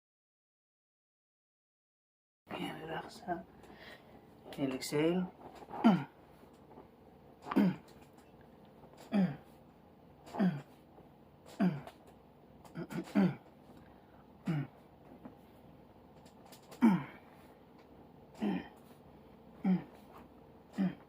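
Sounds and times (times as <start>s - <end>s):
person groaning: 5.7s - 6.2s, 7.4s - 8.0s, 9.0s - 9.6s, 10.3s - 10.8s, 11.5s - 12.0s, 12.7s - 13.5s, 14.4s - 14.8s, 16.7s - 17.4s, 18.3s - 18.9s, 19.6s - 20.1s, 20.7s - 21.0s.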